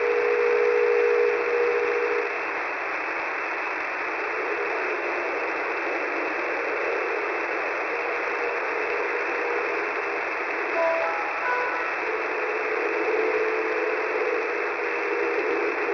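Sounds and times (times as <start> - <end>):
radio static hiss: 6.5 - 15.9.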